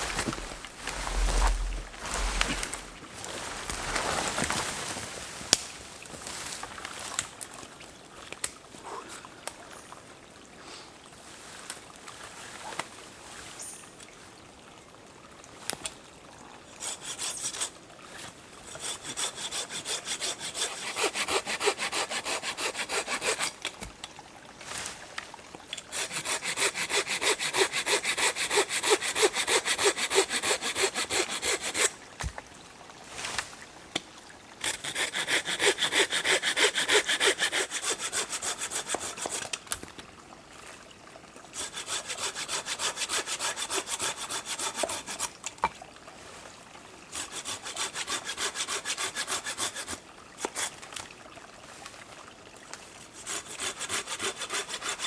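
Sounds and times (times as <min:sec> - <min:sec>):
hand saw cutting wood: 0:16.8 - 0:17.8, 0:18.7 - 0:23.6, 0:25.9 - 0:31.9, 0:34.6 - 0:39.5, 0:41.6 - 0:45.3, 0:47.1 - 0:50.8, 0:53.2 - 0:55.0.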